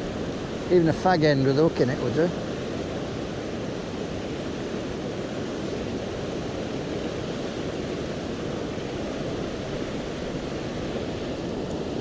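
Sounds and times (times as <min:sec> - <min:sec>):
river rushing over rocks: 0:00.0 - 0:12.0.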